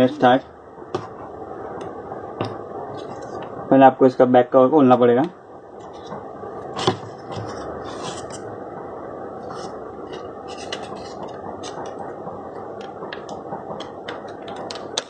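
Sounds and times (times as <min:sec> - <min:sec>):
phone back cover scraping: 0:06.8 - 0:08.4, 0:09.4 - 0:11.8.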